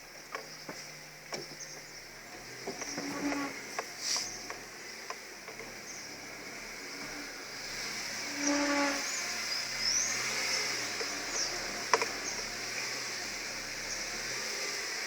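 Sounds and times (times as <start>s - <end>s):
car creaking and squealing: 2.4s - 5.0s, 5.6s - 14.9s.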